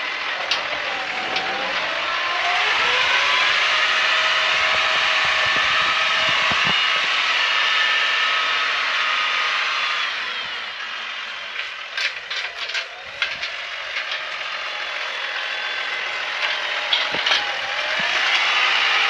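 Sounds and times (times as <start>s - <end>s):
farm machinery running: 0.0s - 19.0s
rattles and clicks: 0.3s - 7.0s, 11.5s - 15.0s, 15.8s - 19.0s.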